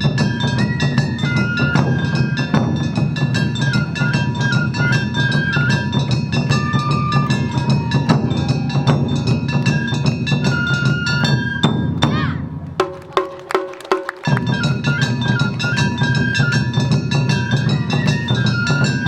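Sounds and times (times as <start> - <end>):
bamboo flute melody: 0.0 - 19.0
taiko drums beating: 0.0 - 19.0.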